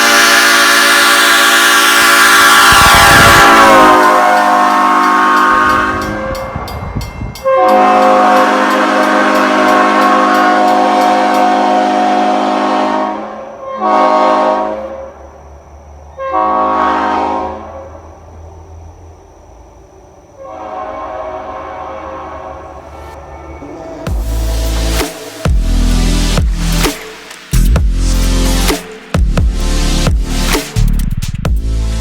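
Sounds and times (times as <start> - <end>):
train horn blasts: 0.0 - 15.2, 16.2 - 18.1, 20.4 - 25.1.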